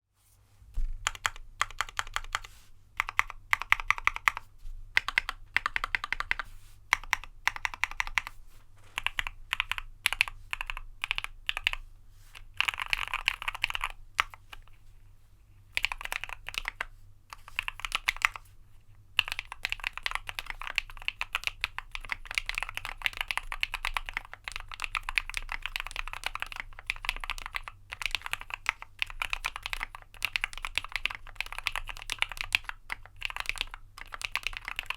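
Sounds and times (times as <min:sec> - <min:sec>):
typing on mechanical keyboard: 0:01.0 - 0:08.4, 0:09.0 - 0:11.8, 0:12.4 - 0:14.7, 0:15.8 - 0:18.4, 0:19.2 - 0:34.9.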